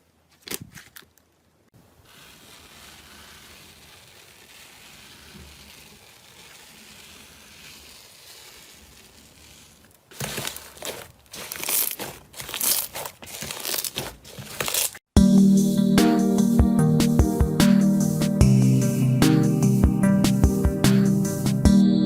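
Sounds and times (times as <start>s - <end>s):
slime hissing softly: 2.0s - 10.0s
slime crackling and crinkling: 2.0s - 15.0s.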